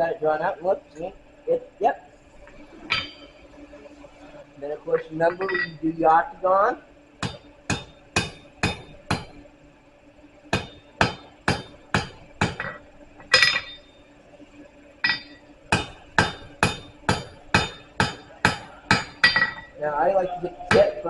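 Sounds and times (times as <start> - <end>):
hammer striking steel on anvil: 2.9 - 3.3, 5.3 - 5.8, 7.2 - 9.3, 10.5 - 13.9, 15.0 - 19.7, 20.6 - 21.0.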